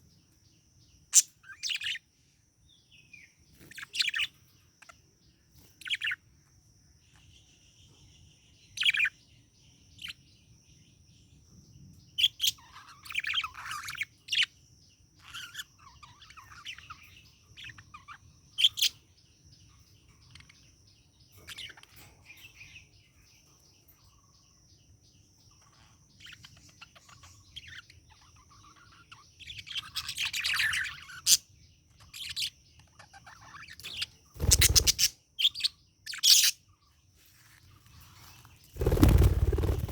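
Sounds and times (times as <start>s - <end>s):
budgerigar chirping: 32.2s - 36.6s.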